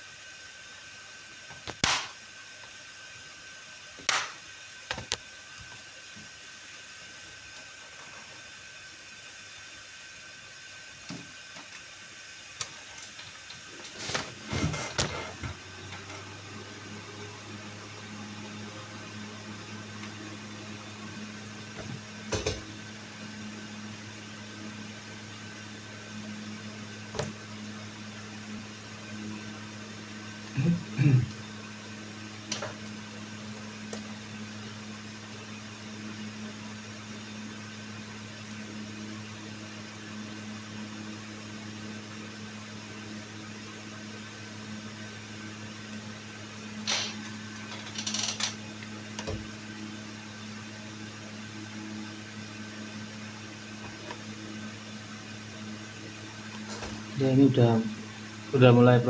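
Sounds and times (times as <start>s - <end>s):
steady low hum: 13.7s - 39.2s, 39.8s - 59.0s.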